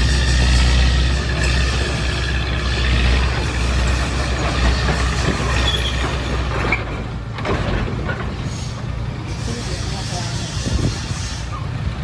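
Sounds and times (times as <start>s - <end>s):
diesel engine running: 0.0s - 8.2s
metallic squeaks and clatter: 0.0s - 11.7s.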